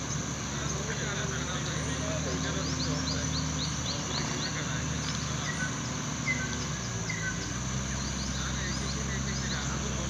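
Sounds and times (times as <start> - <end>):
birds chirping and whistling: 2.4 - 9.8.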